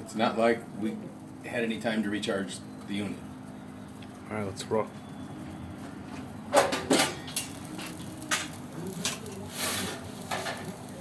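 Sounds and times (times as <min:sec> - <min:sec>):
metal peel scraping: 0:06.6 - 0:10.8.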